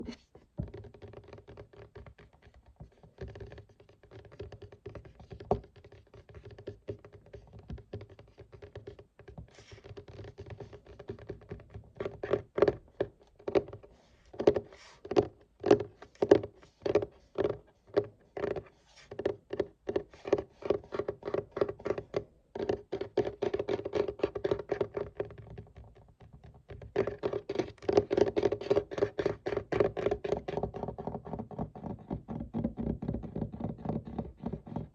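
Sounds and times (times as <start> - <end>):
fingers tapping on a desk: 0.6 - 34.9
scratching on desk surface: 13.5 - 19.4.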